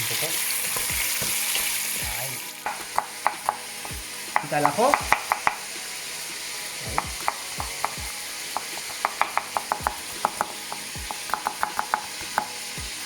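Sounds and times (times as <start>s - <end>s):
meat sizzling in oil: 0.0s - 13.0s
utensil clicking against pot: 2.6s - 5.7s, 6.9s - 12.7s.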